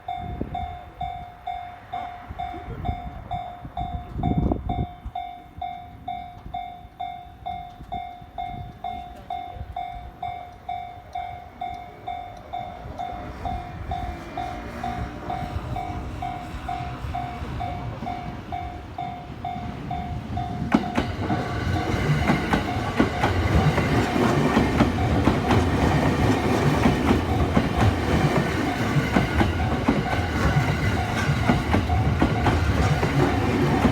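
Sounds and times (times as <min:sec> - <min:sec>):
train wheels clattering: 0:12.4 - 0:33.9.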